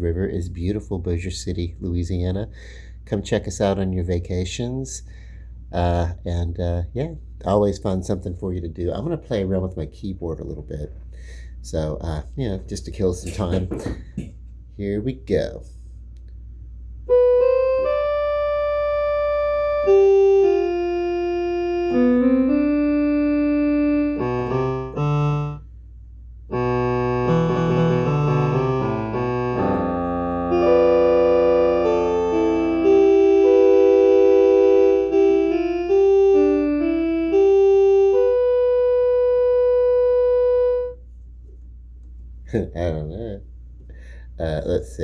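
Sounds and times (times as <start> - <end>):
electronic keyboard melody: 17.1 - 25.7, 26.5 - 41.0.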